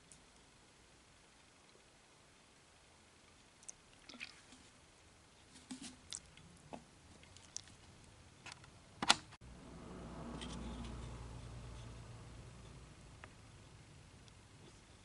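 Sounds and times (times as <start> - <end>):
steady low hum: 4.6 - 15.0.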